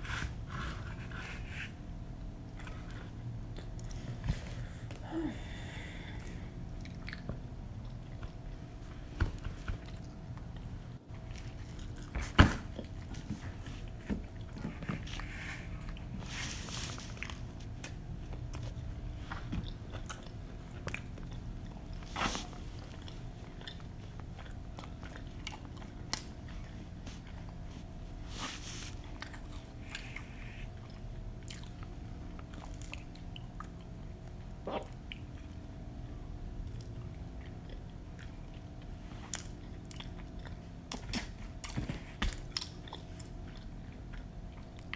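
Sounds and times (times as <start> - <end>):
low room hum: 0.0 - 44.9
people chewing pizza: 0.0 - 44.9.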